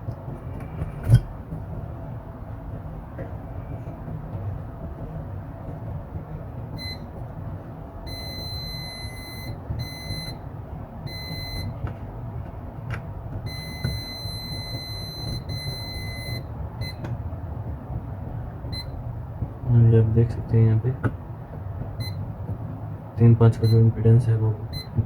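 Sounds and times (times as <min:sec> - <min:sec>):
steady low hum: 0:00.0 - 0:25.0
multimeter continuity beeps: 0:06.8 - 0:07.1, 0:08.0 - 0:11.8, 0:13.4 - 0:17.0, 0:18.7 - 0:19.0, 0:22.0 - 0:22.3, 0:23.5 - 0:24.0, 0:24.7 - 0:25.0.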